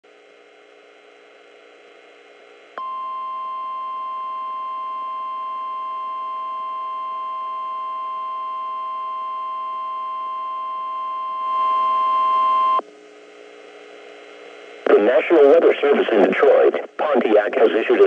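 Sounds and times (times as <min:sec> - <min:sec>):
loud steady alarm beep: 0:02.8 - 0:12.8
faint radio hiss: 0:11.6 - 0:18.0.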